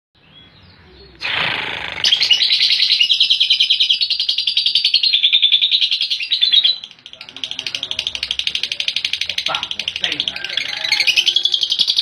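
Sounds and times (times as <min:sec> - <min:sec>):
harsh noisy burst: 0:01.2 - 0:02.6
lovebird chattering high notes: 0:01.2 - 0:12.0.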